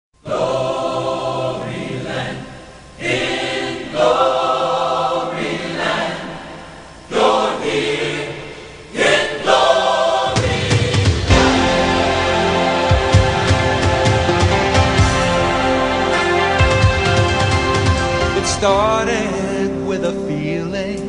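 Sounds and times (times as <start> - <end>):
gospel choir singing: 0.2 - 21.0
band playing low beat: 10.2 - 21.0.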